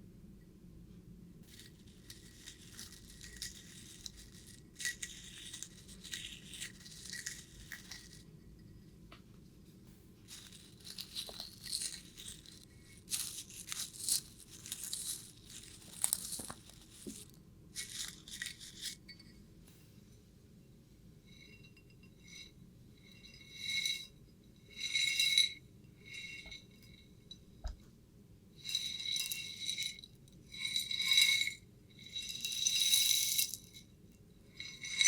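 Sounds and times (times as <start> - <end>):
crinkling handling noise: 1.4 - 8.2, 10.2 - 19.0
glassy jingling: 10.3 - 19.4, 24.7 - 27.6, 28.6 - 33.8, 34.6 - 35.0.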